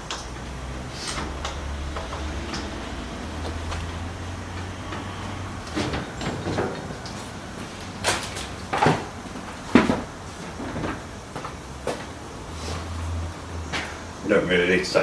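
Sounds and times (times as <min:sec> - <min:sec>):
metal parts knocking and clunking: 0:03.4 - 0:12.0.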